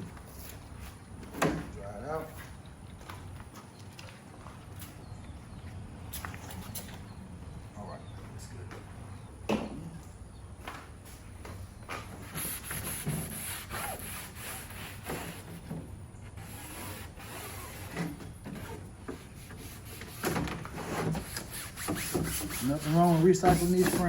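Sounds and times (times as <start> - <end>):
rubbing and scraping on screen frame: 16.4 - 24.0.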